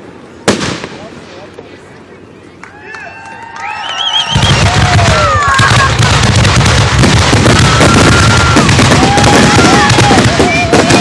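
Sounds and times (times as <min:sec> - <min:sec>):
fireworks bursts and booms: 0:00.0 - 0:02.0, 0:04.3 - 0:11.0
whistling fireworks: 0:03.0 - 0:11.0.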